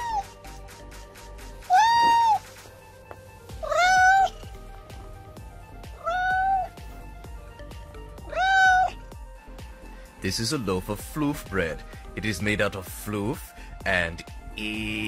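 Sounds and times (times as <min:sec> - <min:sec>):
cat meowing: 0:00.0 - 0:00.3, 0:01.6 - 0:02.6, 0:03.5 - 0:04.4, 0:05.9 - 0:06.8, 0:08.2 - 0:09.0
background music with beat: 0:00.0 - 0:15.0.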